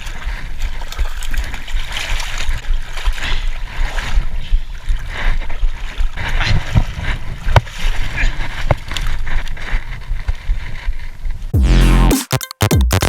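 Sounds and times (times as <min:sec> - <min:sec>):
water sloshing and splashing: 0:00.0 - 0:09.6
wind buffeting microphone: 0:05.9 - 0:08.9.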